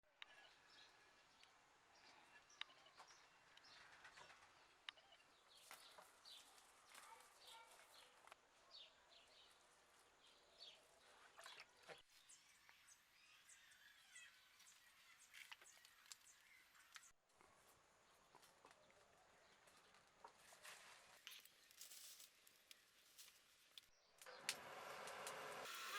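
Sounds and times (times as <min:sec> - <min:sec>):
birds chirping and twittering: 0:00.1 - 0:17.2.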